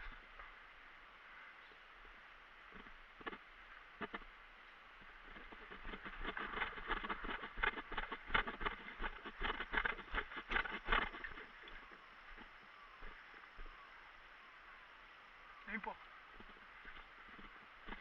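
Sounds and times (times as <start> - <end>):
footsteps crunching over rough ground: 5.0 - 14.3, 15.7 - 18.0.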